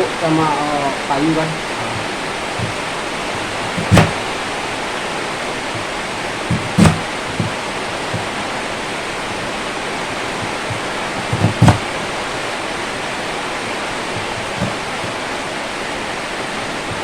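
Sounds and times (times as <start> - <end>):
steady hiss: 0.0 - 17.0
knife chopping on cutting board: 1.9 - 2.9, 3.5 - 4.3, 5.8 - 8.4, 10.4 - 11.9, 14.2 - 15.2.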